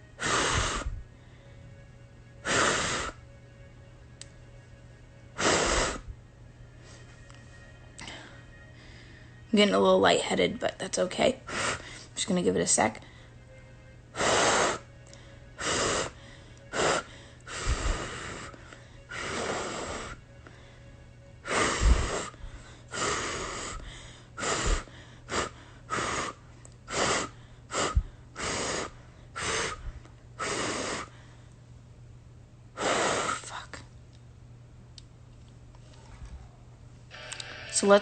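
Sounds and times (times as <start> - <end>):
woman breathing hard: 0.0 - 1.8, 8.0 - 9.5, 11.5 - 12.2, 13.0 - 13.4, 14.2 - 31.6.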